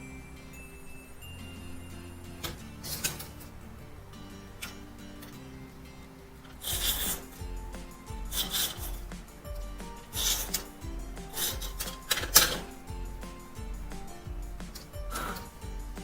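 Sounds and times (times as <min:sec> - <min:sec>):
soft background music: 0:00.0 - 0:16.0
paper rubbing and scraping: 0:06.6 - 0:07.5, 0:08.2 - 0:09.0, 0:10.1 - 0:10.7.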